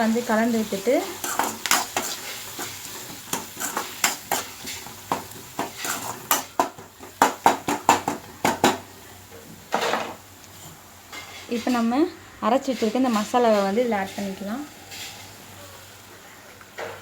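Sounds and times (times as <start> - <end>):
metal spoon scraping pan: 0.5 - 4.9, 5.6 - 6.5, 12.6 - 15.4.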